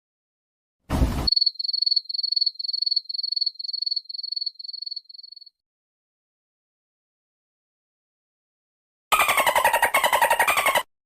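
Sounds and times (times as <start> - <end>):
dull thump: 0.9 - 1.3
cricket chirping: 1.3 - 5.6.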